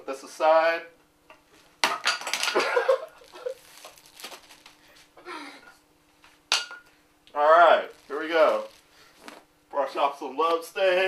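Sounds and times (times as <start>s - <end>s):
packaging rustling and clattering: 2.0s - 5.1s, 7.9s - 9.5s.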